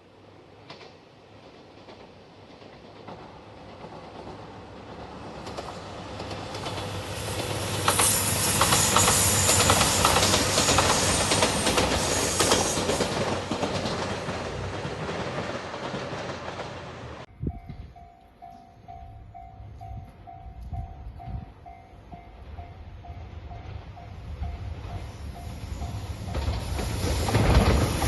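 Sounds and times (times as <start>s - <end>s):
diesel train engine hum: 0.0s - 28.0s
train wheels clacking over rail joints: 0.6s - 17.2s, 25.8s - 28.0s.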